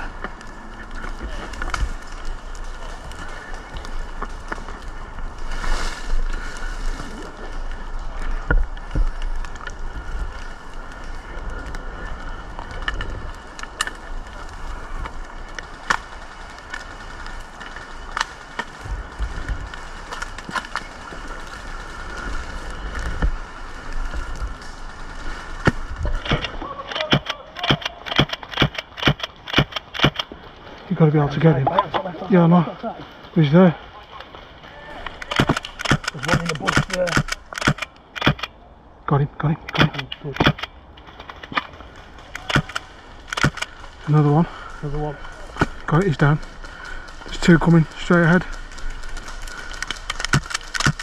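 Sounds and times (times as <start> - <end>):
airsoft guns firing: 26.2 - 30.2, 35.2 - 38.5.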